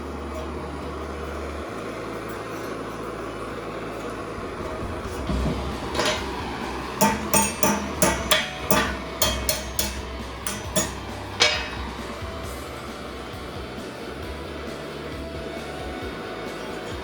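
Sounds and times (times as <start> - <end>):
hammer striking thin steel: 4.8 - 13.1.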